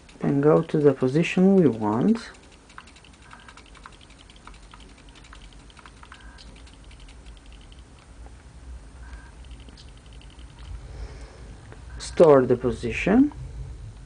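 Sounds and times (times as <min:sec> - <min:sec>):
servo clicks and whines: 0:01.6 - 0:07.8.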